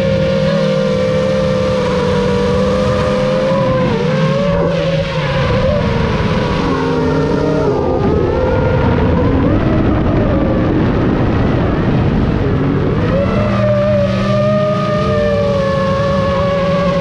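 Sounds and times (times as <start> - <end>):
high-pitched motor and propeller: 0.0 - 9.8.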